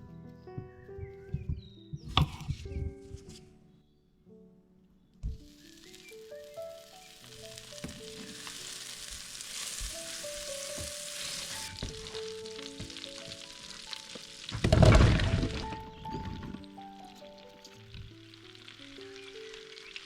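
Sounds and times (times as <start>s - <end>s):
soft background melody: 0.0s - 20.0s
food sizzling in oil: 5.4s - 20.0s.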